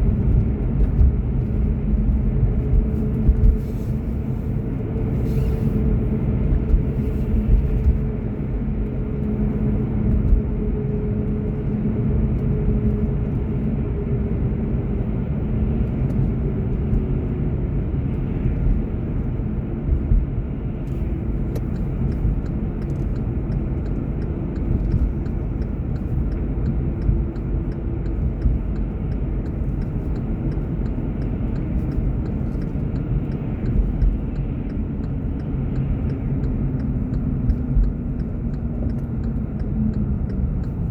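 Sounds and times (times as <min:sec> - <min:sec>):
car engine and tyre rumble: 0:00.0 - 0:40.9
faint ticks: 0:20.8 - 0:40.9.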